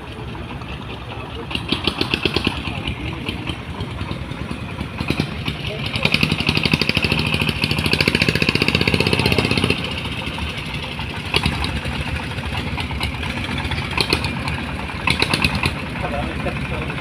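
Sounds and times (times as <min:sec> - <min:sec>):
engine running: 0:00.0 - 0:17.0.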